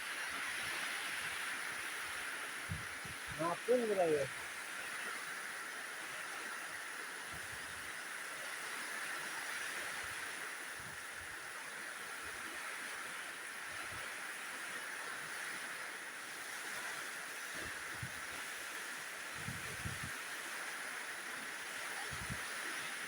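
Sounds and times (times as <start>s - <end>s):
rain falling in wind: 0.0s - 23.0s
wind bumps on microphone: 2.6s - 3.5s, 17.5s - 18.4s, 19.3s - 20.2s, 22.0s - 22.5s.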